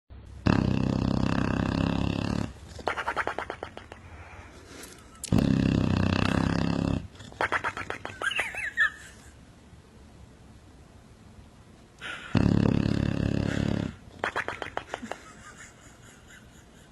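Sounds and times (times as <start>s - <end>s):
loud buzzing snoring: 0.4s - 2.6s, 5.3s - 7.2s, 12.0s - 14.0s.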